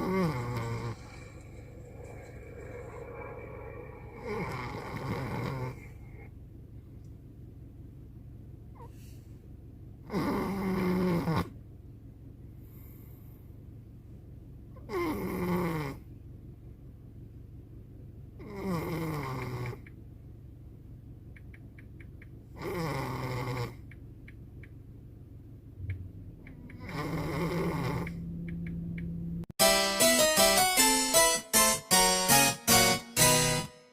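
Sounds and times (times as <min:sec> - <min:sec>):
dog snoring loudly: 0:00.0 - 0:01.4, 0:02.0 - 0:05.9, 0:10.1 - 0:11.5, 0:14.9 - 0:16.0, 0:18.4 - 0:19.8, 0:22.6 - 0:23.8, 0:26.8 - 0:28.2
keyboard music: 0:29.6 - 0:33.9.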